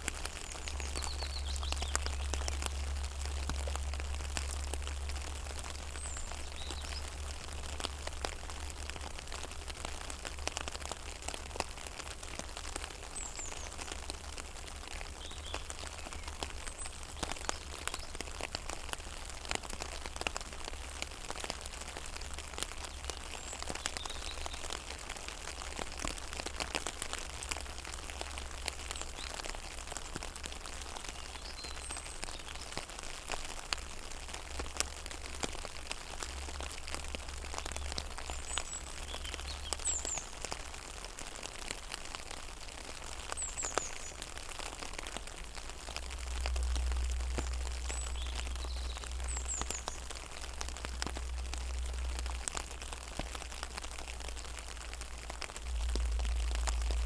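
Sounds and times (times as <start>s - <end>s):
rain pattering on water: 0.0s - 57.0s
low rumble: 46.2s - 57.0s.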